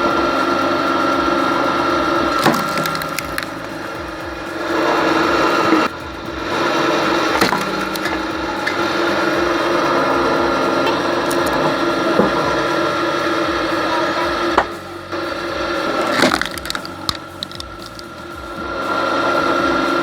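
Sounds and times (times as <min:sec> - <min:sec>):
log splitter machine hum: 0:00.0 - 0:20.0
logs cracking and splitting: 0:02.4 - 0:03.7, 0:07.4 - 0:08.8, 0:16.1 - 0:18.1.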